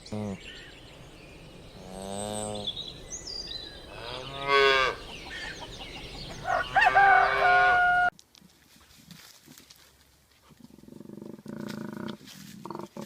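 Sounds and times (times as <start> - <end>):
cow mooing: 1.8 - 2.7, 3.9 - 5.1.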